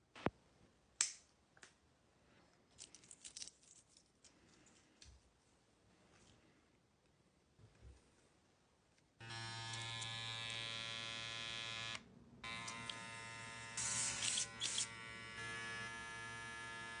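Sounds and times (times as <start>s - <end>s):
electric hair clipper buzzing: 9.2s - 17.0s.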